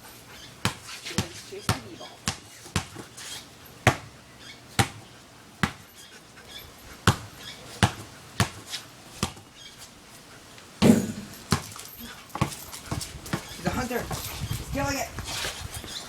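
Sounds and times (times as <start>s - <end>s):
basketball bouncing on hard floor: 5.6s - 5.8s, 7.1s - 8.6s, 10.8s - 11.8s, 12.4s - 14.2s.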